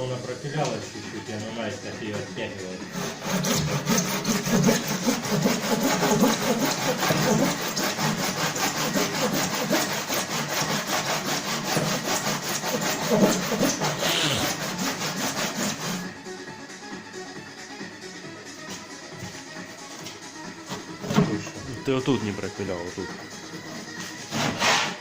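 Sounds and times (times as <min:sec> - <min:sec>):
saw cutting through metal lock: 0:02.8 - 0:16.1, 0:23.1 - 0:25.0.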